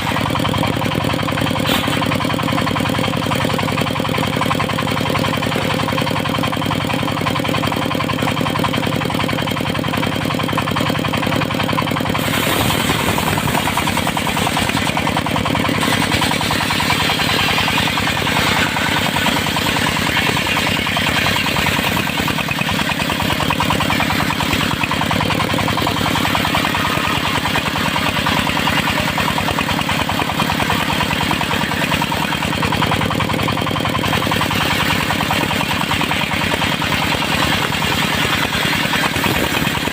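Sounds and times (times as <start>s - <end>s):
saw blade cutting wood: 0.0s - 6.3s, 11.2s - 39.9s
circular saw blade running: 0.0s - 39.9s.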